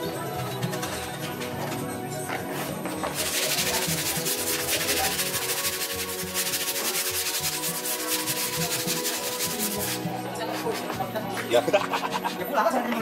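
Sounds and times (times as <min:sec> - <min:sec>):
background music: 0:00.0 - 0:13.0
sandpaper rasping on wood: 0:03.1 - 0:12.4.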